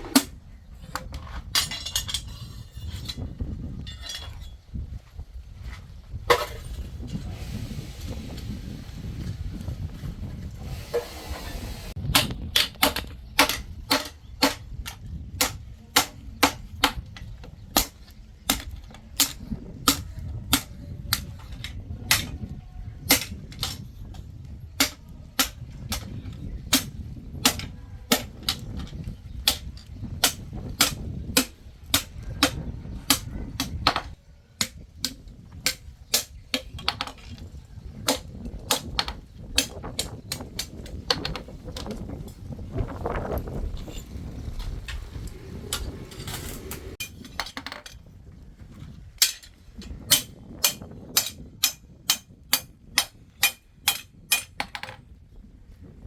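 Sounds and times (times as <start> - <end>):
hammer striking hot steel on anvil: 50.1 - 54.7.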